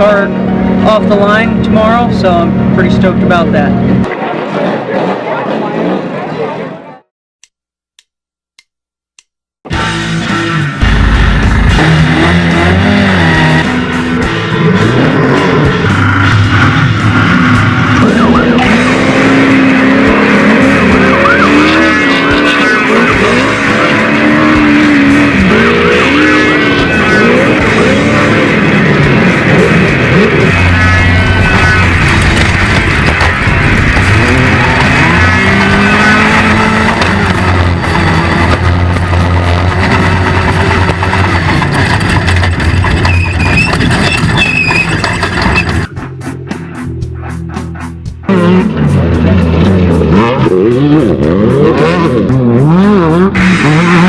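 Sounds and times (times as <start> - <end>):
guitar music: 9.7 - 42.8, 45.7 - 53.8
race car engine revving: 9.7 - 54.0
knocks and rattles: 31.5 - 46.5.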